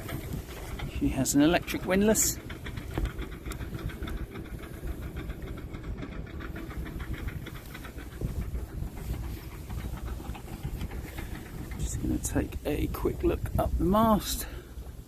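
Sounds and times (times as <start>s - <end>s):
fast faint ticks: 0.0s - 15.0s
wind on microphone: 0.0s - 15.0s.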